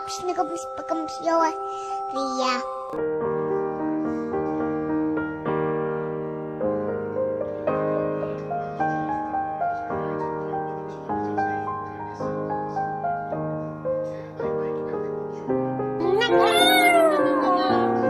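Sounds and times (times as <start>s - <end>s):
soft piano chords and melody: 0.0s - 18.0s.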